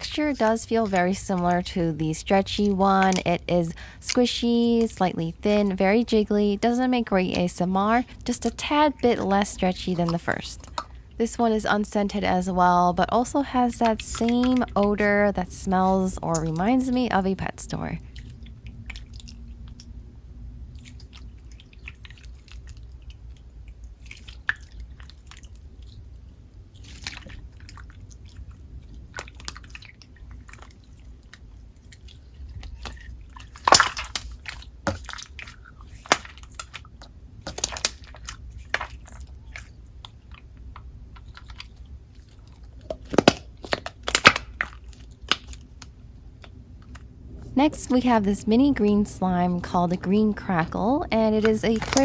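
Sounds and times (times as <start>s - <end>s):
hands squishing slime: 0.0s - 12.4s, 26.8s - 46.5s, 51.1s - 52.0s
sticky clicks and pops: 51.2s - 52.0s.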